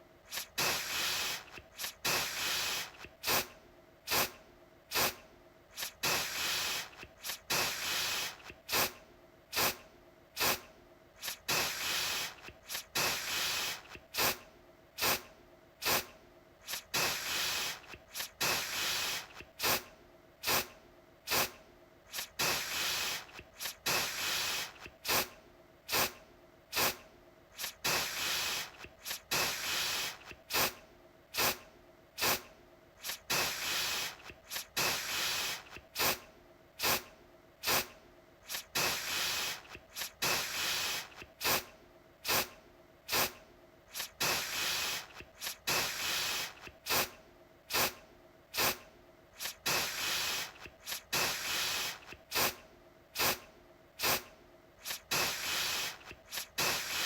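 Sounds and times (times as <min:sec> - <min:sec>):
aerosol can spraying: 0:00.3 - 0:03.5, 0:04.1 - 0:09.8, 0:10.4 - 0:14.4, 0:15.0 - 0:20.7, 0:21.3 - 0:25.3, 0:25.9 - 0:27.0, 0:27.6 - 0:30.8, 0:31.4 - 0:31.6, 0:32.2 - 0:36.2, 0:36.8 - 0:48.0, 0:48.6 - 0:48.8, 0:49.4 - 0:52.6, 0:53.2 - 0:53.4, 0:54.0 - 0:57.0.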